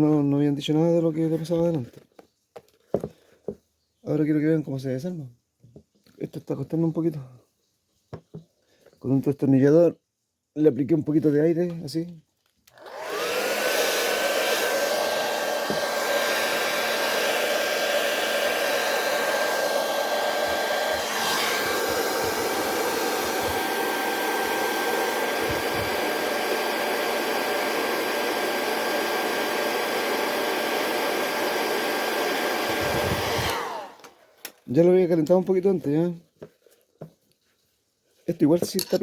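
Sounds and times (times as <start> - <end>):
hot-air blower motor whine: 12.8 - 34.2.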